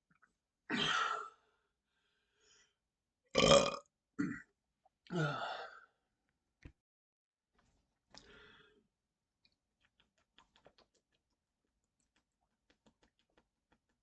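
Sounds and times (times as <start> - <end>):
man burping: 3.4 - 4.5.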